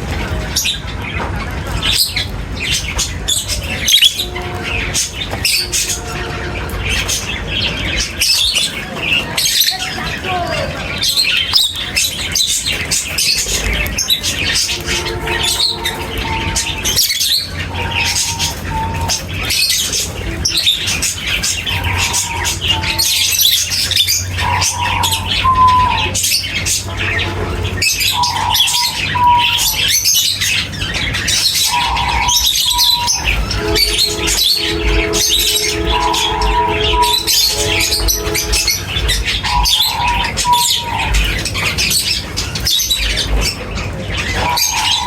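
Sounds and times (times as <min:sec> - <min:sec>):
small birds chirping: 0:00.0 - 0:45.0
bird squawks: 0:01.7 - 0:45.0
short lower bird calls: 0:31.4 - 0:41.3.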